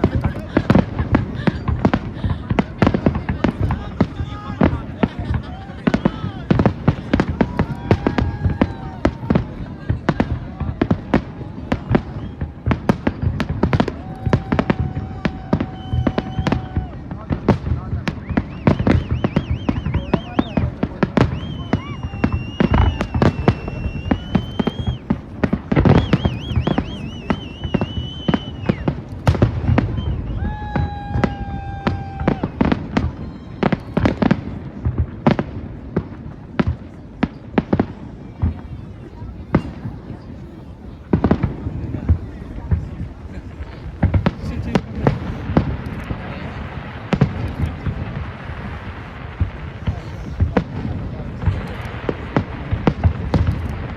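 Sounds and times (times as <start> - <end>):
fireworks banging: 0.0 - 53.9
steady whistling tone: 18.2 - 28.9.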